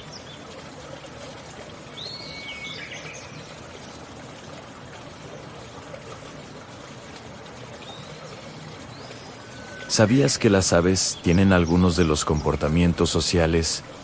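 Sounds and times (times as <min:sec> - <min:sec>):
flowing water: 0:00.0 - 0:14.0
wild birds calling: 0:01.9 - 0:04.2, 0:05.8 - 0:14.0.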